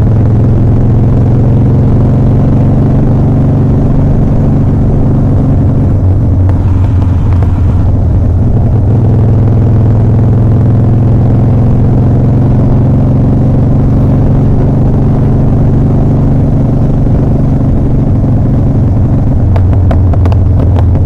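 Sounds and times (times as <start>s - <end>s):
motorcycle engine running: 0.0s - 21.0s.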